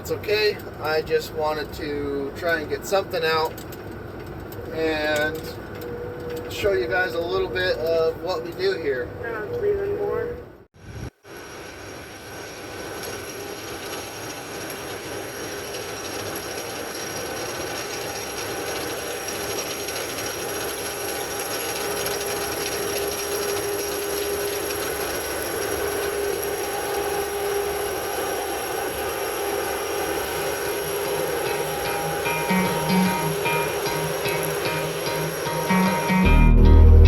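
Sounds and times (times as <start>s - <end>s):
combine harvester running: 11.3s - 37.0s.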